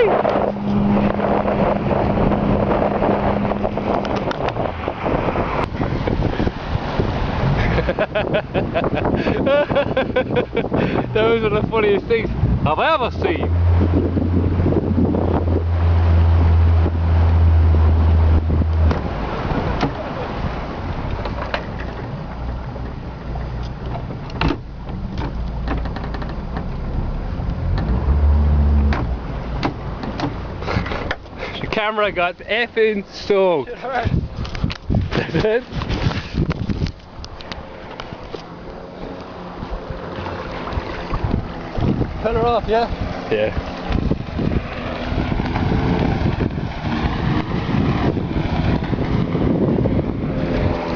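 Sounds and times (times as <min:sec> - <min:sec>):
wind noise: 0:00.0 - 0:31.9, 0:33.6 - 0:50.9
boat motor humming: 0:00.0 - 0:50.9
water noise: 0:00.0 - 0:50.9.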